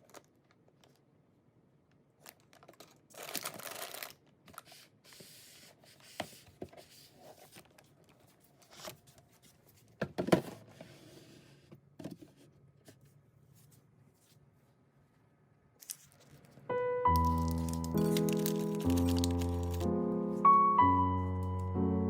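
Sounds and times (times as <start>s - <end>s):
food packaging tearing and crinkling: 2.3s - 4.9s, 17.2s - 19.9s.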